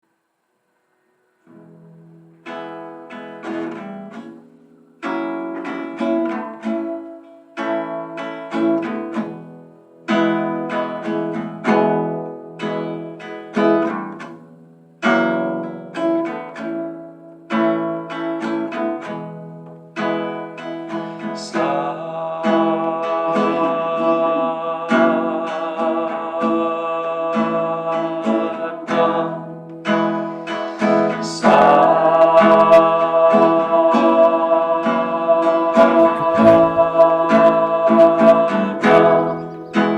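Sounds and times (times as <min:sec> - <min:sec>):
acoustic guitar chords: 0:01.4 - 0:39.9
wavering held melody: 0:35.5 - 0:39.9.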